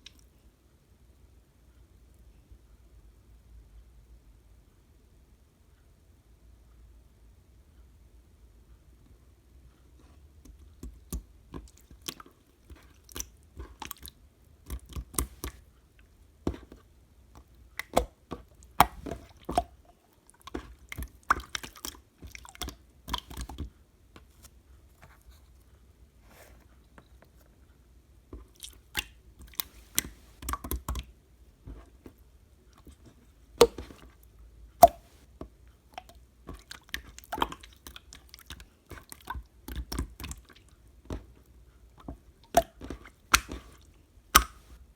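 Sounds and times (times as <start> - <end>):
slime squishing with sticky pops: 10.5 - 15.6, 17.4 - 24.4, 28.3 - 31.1, 32.8 - 34.2, 34.8 - 35.2, 36.0 - 44.8.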